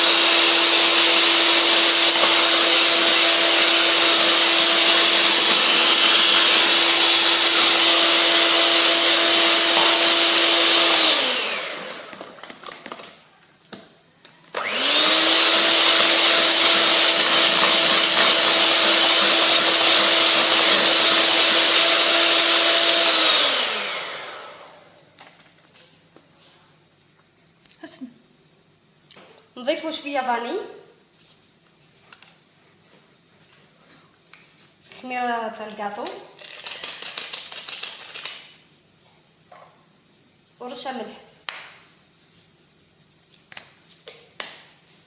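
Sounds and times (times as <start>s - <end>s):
electric hand mixer whining: 0.0s - 12.4s, 14.5s - 25.0s.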